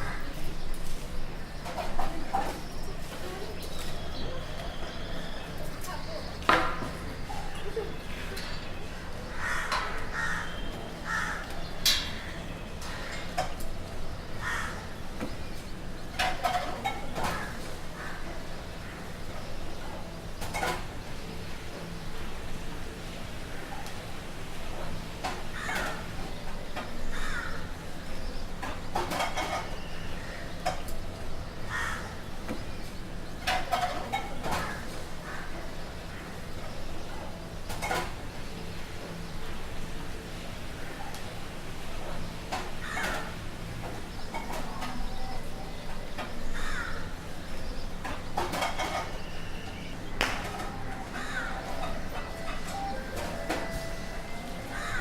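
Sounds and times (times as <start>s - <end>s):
low street rumble: 0.0s - 55.0s
crows cawing: 9.2s - 11.6s, 14.4s - 15.0s, 25.5s - 26.1s, 27.1s - 27.8s, 31.7s - 32.2s, 34.6s - 36.4s, 42.8s - 43.4s, 46.6s - 47.2s, 51.0s - 52.0s, 54.6s - 55.0s.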